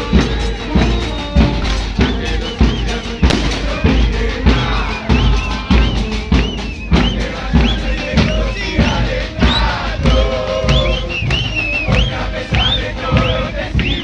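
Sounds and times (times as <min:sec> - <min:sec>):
bass drums pounding: 0:03.1 - 0:10.9.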